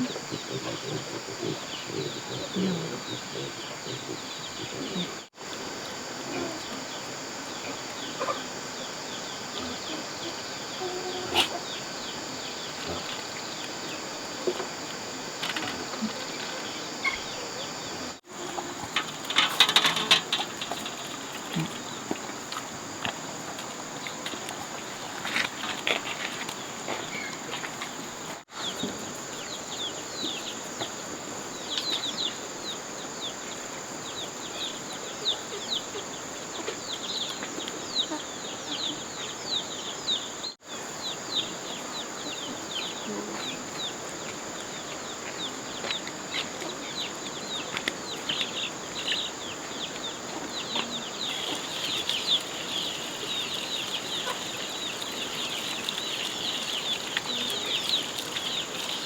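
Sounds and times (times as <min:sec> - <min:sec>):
insect drone: 0:00.0 - 0:59.0
chicks peeping: 0:44.8 - 0:59.0.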